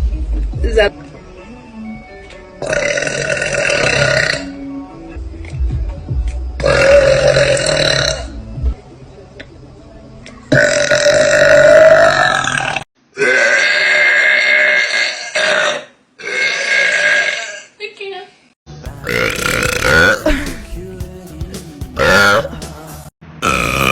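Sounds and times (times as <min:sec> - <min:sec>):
girls belching loudly: 0:02.6 - 0:04.6, 0:10.5 - 0:17.7, 0:19.0 - 0:20.5, 0:22.0 - 0:22.5, 0:23.4 - 0:23.9.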